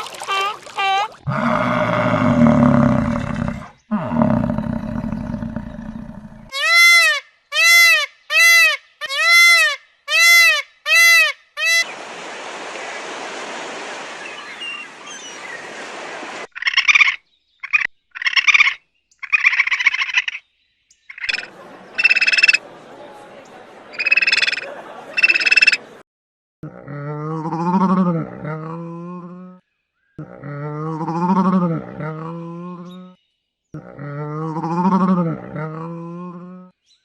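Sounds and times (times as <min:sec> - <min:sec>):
outdoor hiss: 0:11.8 - 0:16.5.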